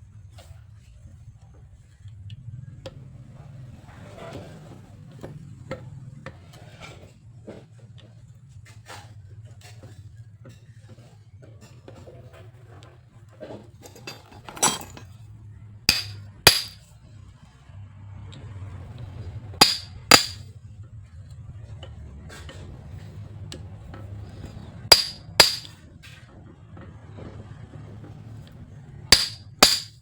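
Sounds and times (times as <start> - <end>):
metal tool clinking on metal: 13.9 - 15.0, 15.9 - 16.8, 19.6 - 20.4, 24.9 - 25.7, 29.2 - 30.0.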